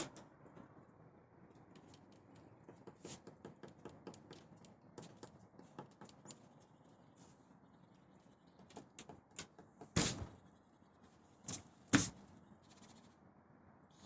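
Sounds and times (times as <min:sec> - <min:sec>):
faint irregular tapping: 0:01.6 - 0:06.7.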